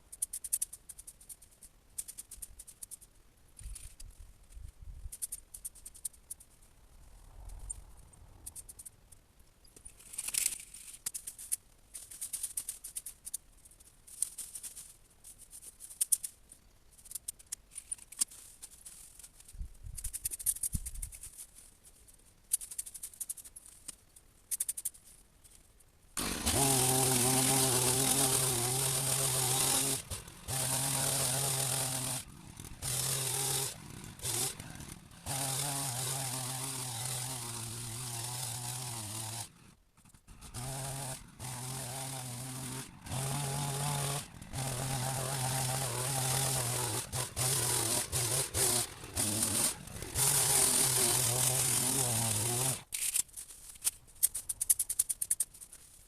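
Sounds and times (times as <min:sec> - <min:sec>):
twigs rustling and snapping: 0:09.7 - 0:36.0
hedge trimmer motor running: 0:26.2 - 0:52.9.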